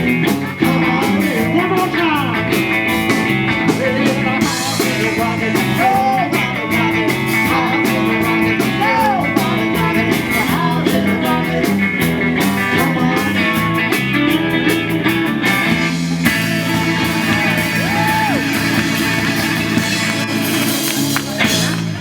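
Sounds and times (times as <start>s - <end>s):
drum beat: 0.0s - 11.4s, 15.6s - 22.0s
bass guitar: 0.0s - 22.0s
electric guitar: 0.0s - 22.0s
person singing: 0.2s - 14.4s.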